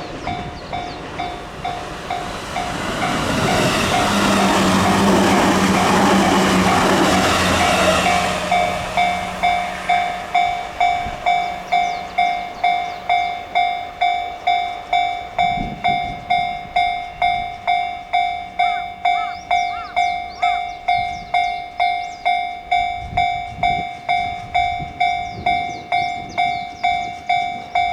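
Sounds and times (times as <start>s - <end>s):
electric train rumbling: 0.0s - 27.9s
level-crossing alarm ding: 6.8s - 27.9s.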